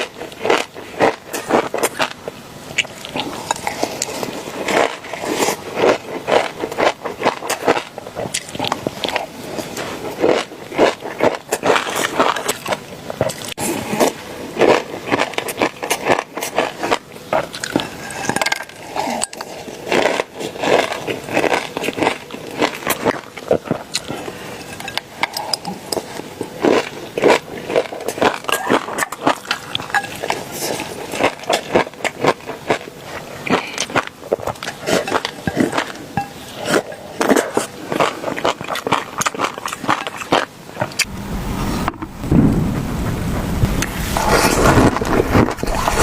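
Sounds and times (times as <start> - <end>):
crunchy food being chewed: 0.0 - 41.1.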